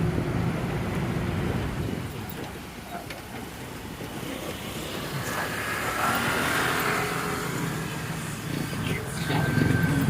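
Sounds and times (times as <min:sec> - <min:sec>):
road noise: 0:00.0 - 0:10.0
motor vehicle passing: 0:03.5 - 0:10.0.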